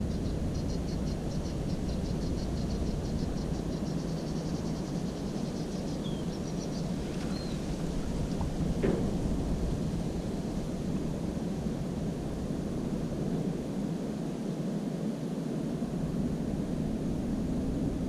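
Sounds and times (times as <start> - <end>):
steady low rumble: 0.0 - 14.2
short knock: 8.8 - 9.5.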